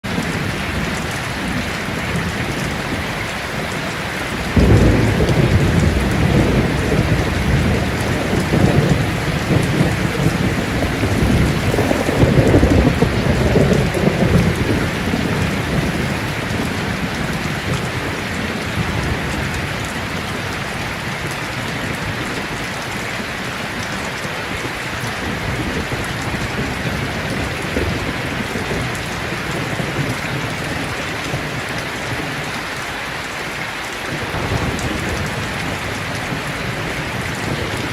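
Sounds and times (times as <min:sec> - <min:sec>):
heavy rain: 0:00.0 - 0:37.9
rolling thunder rumble: 0:00.1 - 0:22.7, 0:34.2 - 0:37.9.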